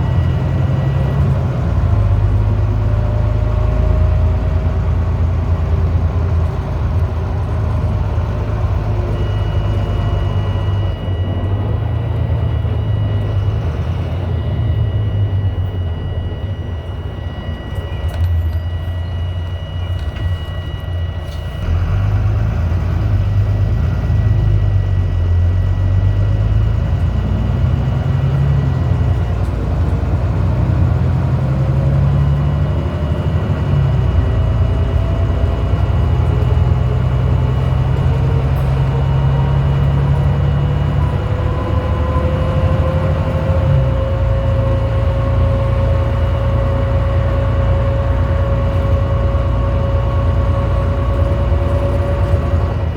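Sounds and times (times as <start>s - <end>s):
bus diesel engine: 0.0s - 52.9s
constant high beep: 0.0s - 52.9s
gearbox whine: 0.0s - 52.9s.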